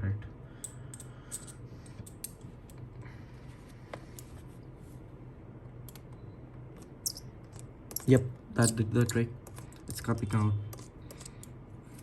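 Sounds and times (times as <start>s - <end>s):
low steady hum: 0.0s - 12.0s
screwdriver clicking and scraping: 7.0s - 12.0s.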